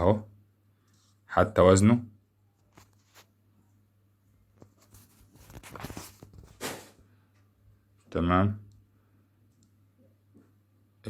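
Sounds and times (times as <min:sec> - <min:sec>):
paper rustling: 0:02.6 - 0:03.4, 0:04.6 - 0:07.0.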